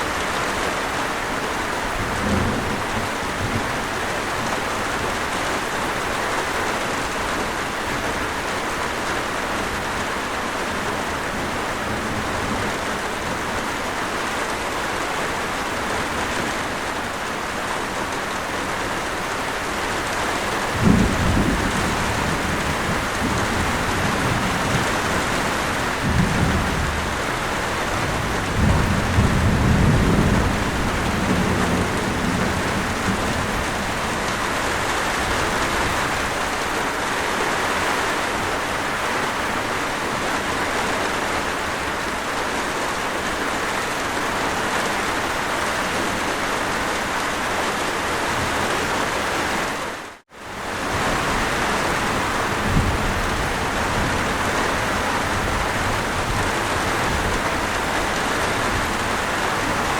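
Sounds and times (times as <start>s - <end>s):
steady rain falling: 0.0s - 59.9s
low rumbling thunder: 1.8s - 5.0s, 20.6s - 36.5s, 50.8s - 59.9s.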